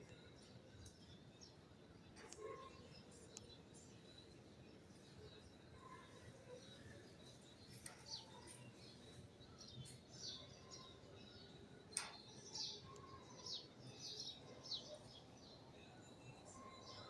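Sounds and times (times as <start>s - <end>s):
small birds chirping: 0.0s - 17.0s
sharp click: 11.9s - 12.3s.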